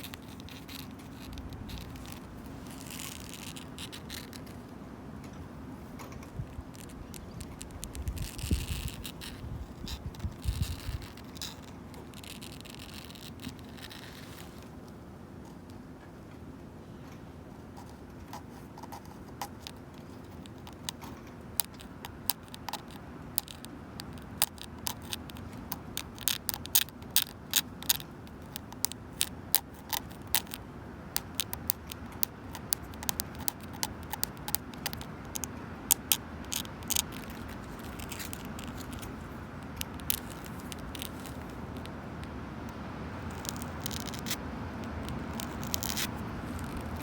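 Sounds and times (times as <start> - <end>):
wind rumble: 6.2 - 11.3
passing traffic: 19.9 - 47.0.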